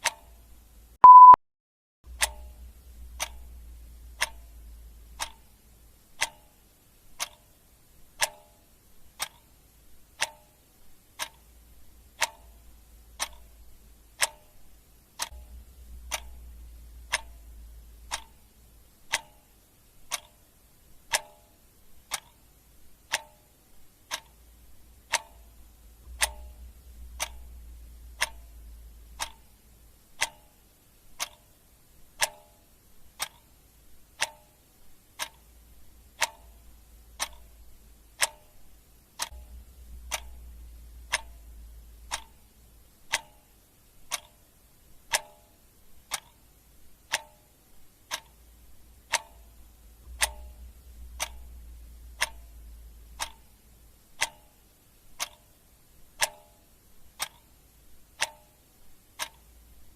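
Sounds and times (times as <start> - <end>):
clock ticking: 0.0 - 1.4, 2.1 - 59.9
faint low hum: 2.1 - 59.9.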